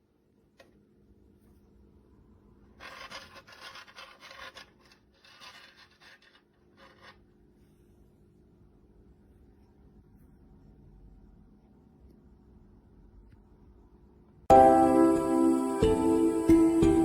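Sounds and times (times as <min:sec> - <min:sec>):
faint rubbing and scraping: 0:02.7 - 0:08.6
low steady hum: 0:07.8 - 0:17.0.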